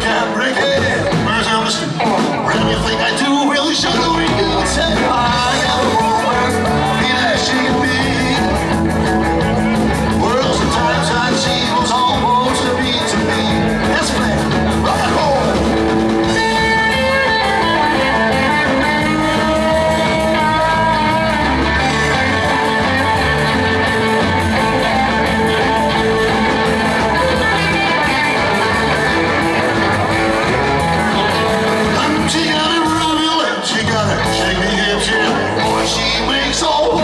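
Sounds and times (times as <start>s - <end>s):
electric guitar: 0.0s - 37.0s
rock band playing: 0.0s - 37.0s.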